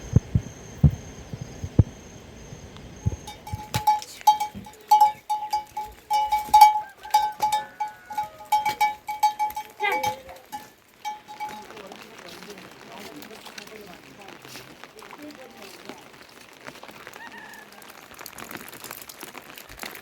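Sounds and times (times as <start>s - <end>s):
livestock bell clanking: 3.1s - 12.0s.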